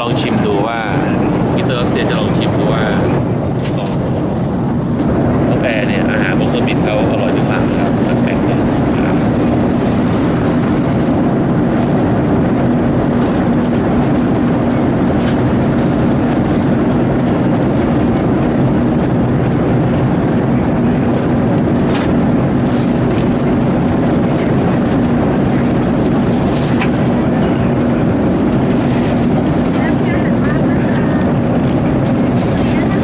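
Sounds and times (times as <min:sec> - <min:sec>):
airliner cabin drone: 0:00.0 - 0:33.0.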